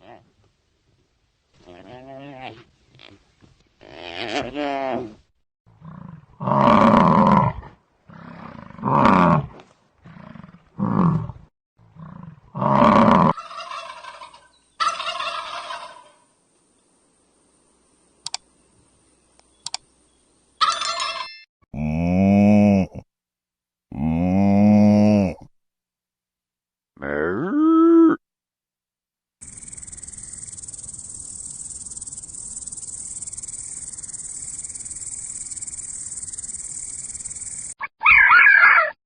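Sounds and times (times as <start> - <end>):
sharp clicks: 18.2 - 18.5, 19.3 - 19.9.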